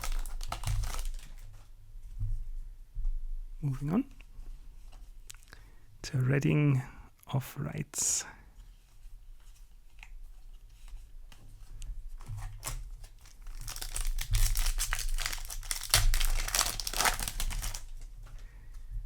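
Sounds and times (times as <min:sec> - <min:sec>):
foil wrapper crinkling and tearing: 0:00.0 - 0:01.5, 0:12.4 - 0:18.1.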